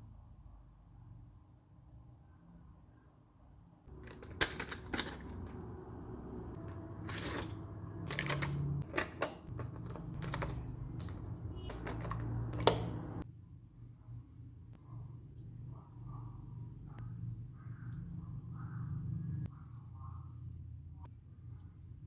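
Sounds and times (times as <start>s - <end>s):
packaging rustling: 3.9s - 13.2s
plastic clicks and taps: 8.1s - 13.2s.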